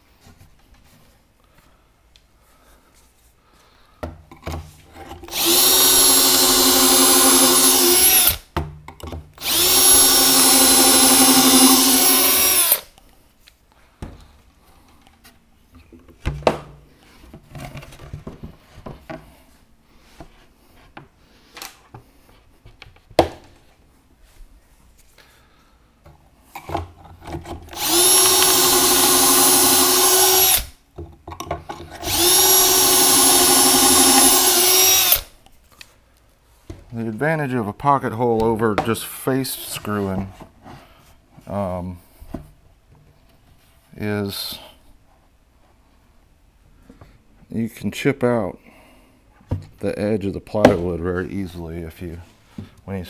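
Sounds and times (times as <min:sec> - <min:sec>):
drill motor whine: 0:05.3 - 0:08.4, 0:09.4 - 0:12.8, 0:27.7 - 0:30.7, 0:32.0 - 0:35.3.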